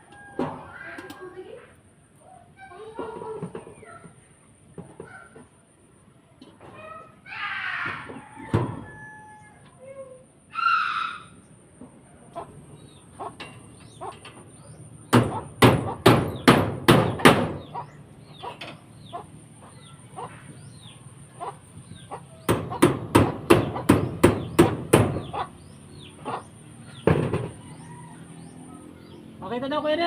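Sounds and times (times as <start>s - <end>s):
small birds chirping: 10.6s - 30.0s.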